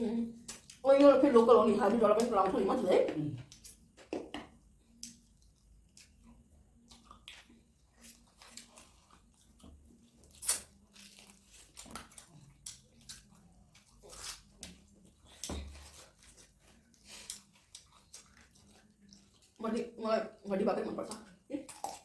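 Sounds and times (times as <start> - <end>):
chewing and biting: 4.9 - 19.6.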